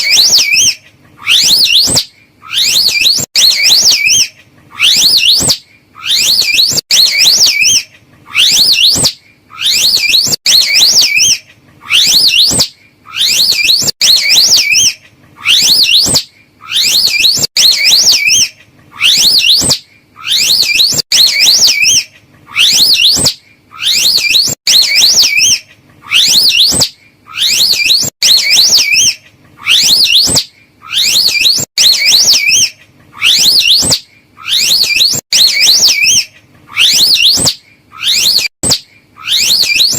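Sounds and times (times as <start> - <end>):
warbling high whistle calls: 0.0 - 39.9.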